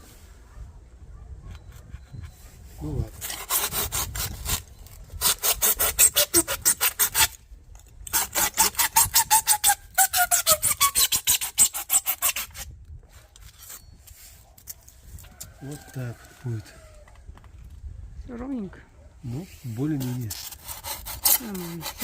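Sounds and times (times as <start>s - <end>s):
hand tool rasping insulation panel: 3.2s - 4.6s, 5.2s - 7.4s, 8.1s - 12.6s, 20.0s - 22.0s.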